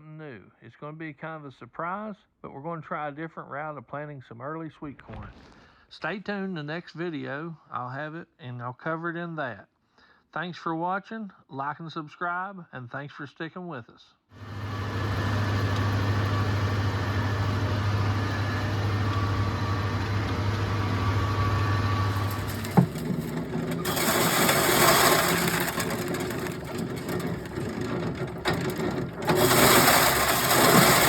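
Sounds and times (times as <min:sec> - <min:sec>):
engine humming: 0:14.4 - 0:31.0
loud rough engine noise: 0:14.4 - 0:31.0
click: 0:19.1 - 0:19.4.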